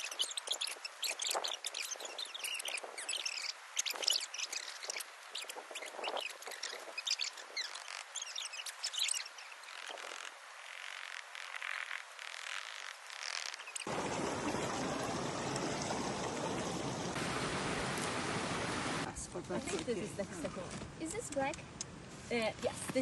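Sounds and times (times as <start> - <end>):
small birds chirping: 0.0 - 17.1
faint steady hiss: 13.9 - 22.8.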